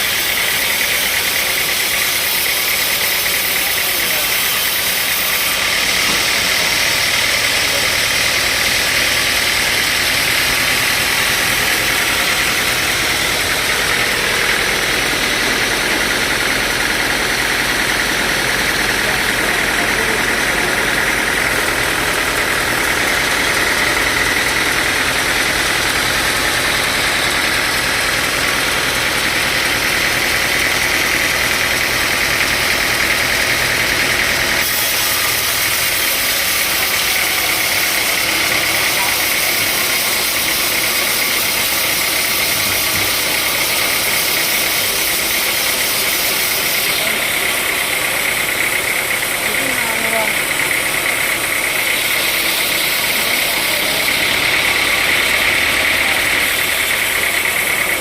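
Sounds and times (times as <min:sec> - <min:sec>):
sawmill log saw running: 0:00.0 - 0:58.0.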